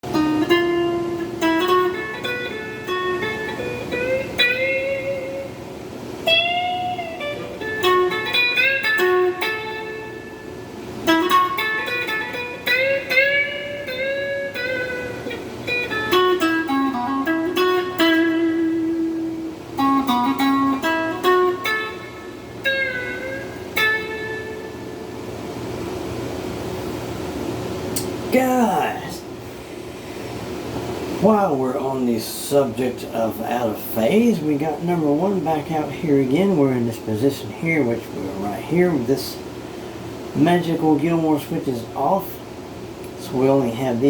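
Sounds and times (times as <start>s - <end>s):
electric guitar lead line: 0.0s - 31.4s.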